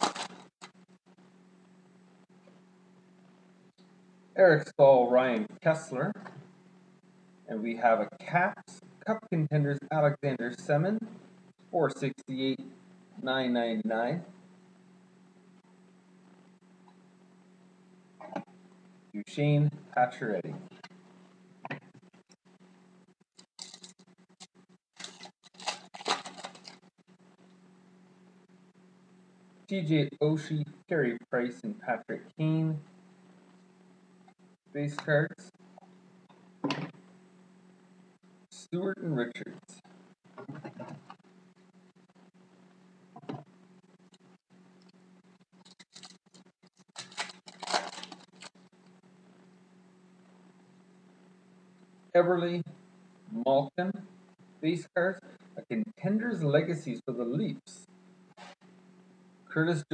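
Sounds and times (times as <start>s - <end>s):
foil packs crinkling: 0.0s - 0.7s, 23.4s - 24.0s, 25.0s - 26.8s, 45.6s - 48.6s
trading cards rustling: 0.0s - 0.7s, 23.4s - 24.0s, 25.0s - 26.8s, 45.6s - 48.6s
faint steady hum: 0.0s - 59.9s.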